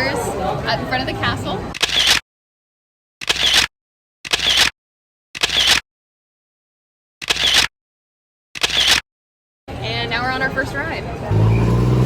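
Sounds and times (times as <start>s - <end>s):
camera shutter sound effect: 1.8s - 2.2s, 3.2s - 3.7s, 4.3s - 4.7s, 5.4s - 5.8s, 7.2s - 7.7s, 8.6s - 9.0s.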